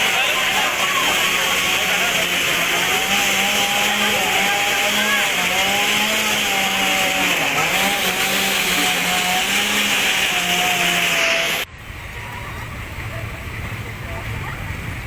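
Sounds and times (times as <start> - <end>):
chainsaw cutting wood: 0.0 - 11.7.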